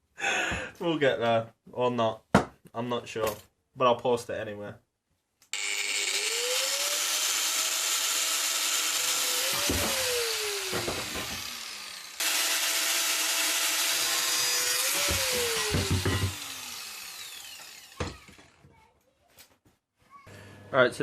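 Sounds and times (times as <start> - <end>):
power tool grinding metal: 5.6 - 18.6.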